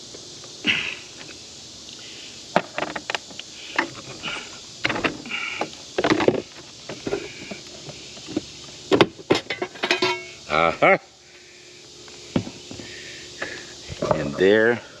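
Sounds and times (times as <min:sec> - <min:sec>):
metal clanks and scrapes: 0:09.3 - 0:10.4.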